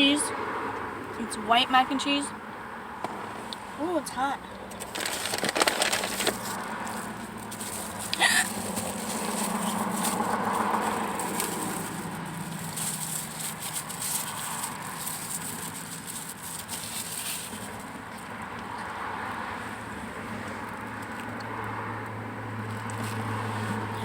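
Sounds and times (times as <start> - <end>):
plastic container crinkling: 4.7 - 18.4.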